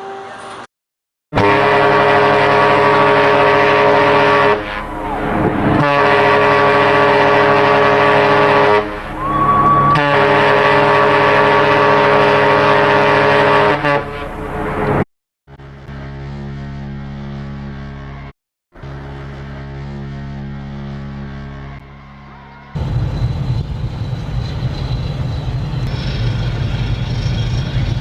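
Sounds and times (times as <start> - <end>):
ship's horn blasts: 1.4 - 14.8.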